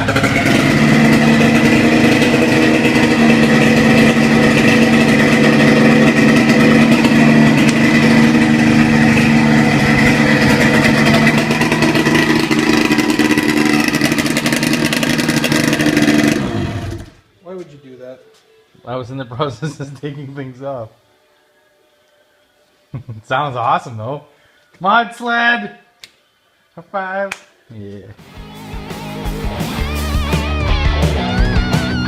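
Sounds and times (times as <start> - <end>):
two-stroke engine running: 0.0 - 17.2.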